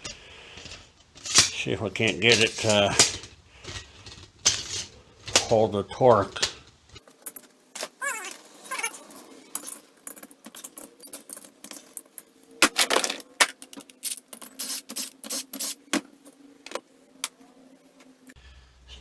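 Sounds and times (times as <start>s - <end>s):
metal tools clinking and knocking: 7.0s - 17.4s.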